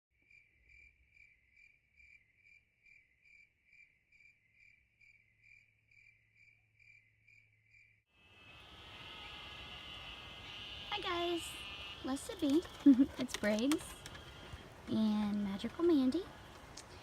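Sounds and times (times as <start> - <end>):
cricket chirping: 0.2 - 13.1.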